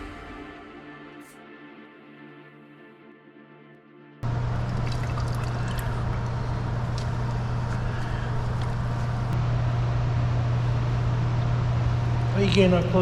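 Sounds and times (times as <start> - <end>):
running trickling water: 4.2 - 9.4
low electric motor hum: 4.2 - 13.0.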